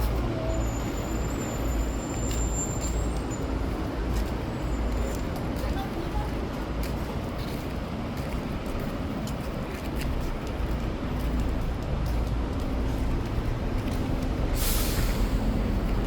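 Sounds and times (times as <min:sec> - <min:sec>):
heavy vehicle engine rumbling: 0:00.0 - 0:16.0
short sharp hiss: 0:14.6 - 0:15.5.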